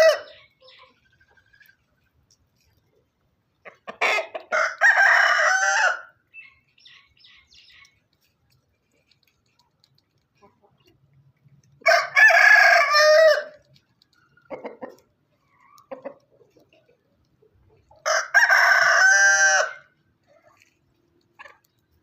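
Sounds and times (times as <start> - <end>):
rooster crowing: 4.5 - 6.1, 11.8 - 13.6, 18.0 - 19.9.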